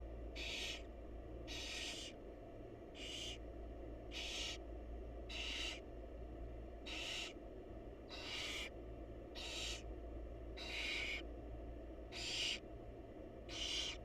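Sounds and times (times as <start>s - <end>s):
owl chicks hissing begging calls: 0.3s - 2.2s, 3.0s - 3.4s, 4.1s - 4.7s, 5.3s - 5.9s, 6.8s - 7.4s, 8.1s - 9.9s, 10.5s - 11.3s, 12.1s - 12.6s, 13.4s - 14.0s.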